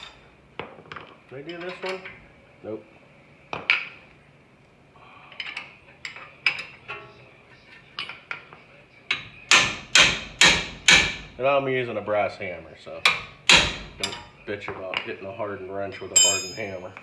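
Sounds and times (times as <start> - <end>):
hammer striking metal wrench: 9.1 - 11.3, 13.1 - 14.3, 16.2 - 17.0
light metallic clinks: 16.2 - 17.0.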